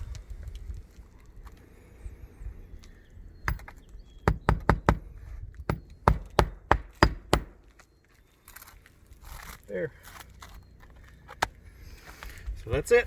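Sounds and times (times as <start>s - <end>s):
hammer striking a roof: 3.5s - 7.7s.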